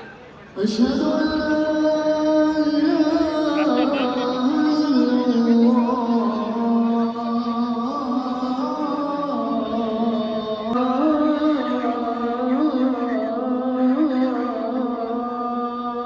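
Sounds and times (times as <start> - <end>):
man chanting call to prayer: 0.0 - 16.0.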